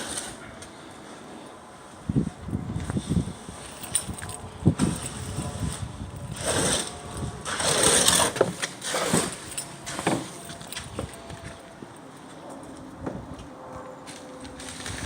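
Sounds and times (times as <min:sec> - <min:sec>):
engine running: 0:00.0 - 0:15.0
concrete rushing and sliding: 0:04.8 - 0:10.5.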